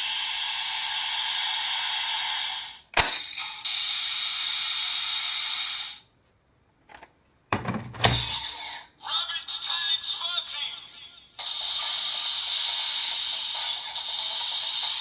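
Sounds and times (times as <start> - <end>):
toy speaker sound: 8.2 - 15.0.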